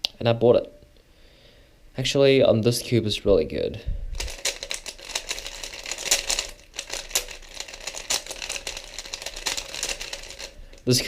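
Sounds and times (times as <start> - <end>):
plastic puzzle cube clicking: 4.2 - 10.9.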